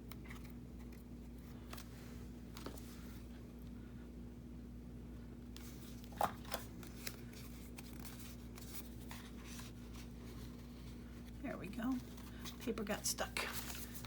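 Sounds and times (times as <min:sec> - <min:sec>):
faint steady hum: 0:00.0 - 0:14.0
paper rustling and crinkling: 0:05.6 - 0:14.0.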